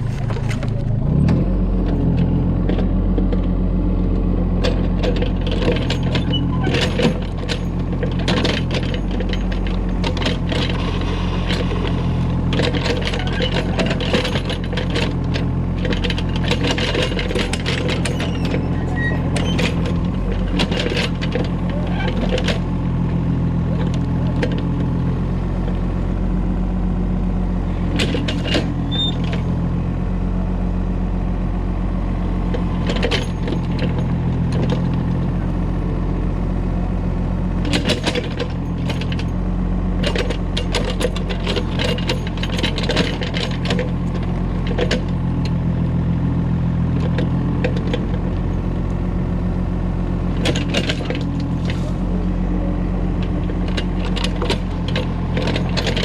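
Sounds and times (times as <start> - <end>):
excavator diesel engine running: 0.0 - 56.0
clanking and rattling: 4.6 - 25.0, 27.9 - 29.6, 32.5 - 35.1, 37.6 - 39.4, 40.0 - 45.6, 50.4 - 56.0.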